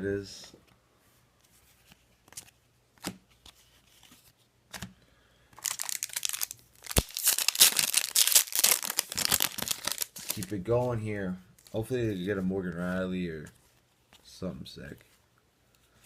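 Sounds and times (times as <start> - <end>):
card pack wrapper tearing and crinkling: 5.6 - 10.6.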